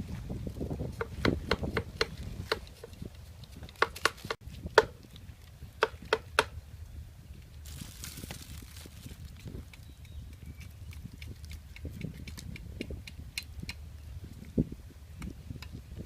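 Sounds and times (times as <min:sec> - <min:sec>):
blade chopping wood: 0:00.9 - 0:03.0, 0:03.6 - 0:05.0.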